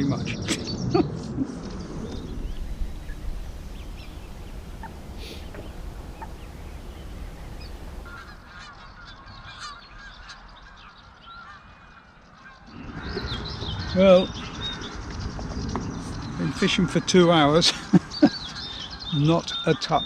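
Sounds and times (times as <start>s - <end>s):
birds calling: 0.0s - 20.0s
low rumble: 0.9s - 8.4s.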